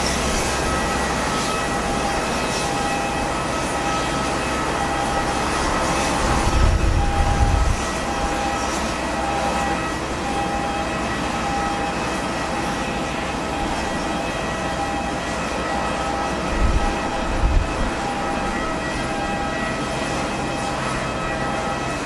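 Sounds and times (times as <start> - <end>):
jet engines running: 0.0 - 22.0
wind buffeting microphone: 4.6 - 9.0, 16.5 - 19.4.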